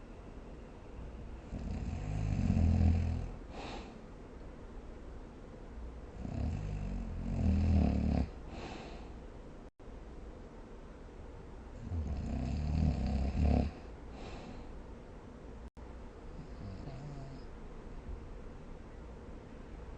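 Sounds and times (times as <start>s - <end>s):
person snoring: 1.5s - 3.9s, 6.2s - 8.9s, 11.8s - 14.5s, 16.4s - 17.5s
breathy puff: 3.5s - 4.0s, 8.5s - 9.2s, 14.1s - 14.7s.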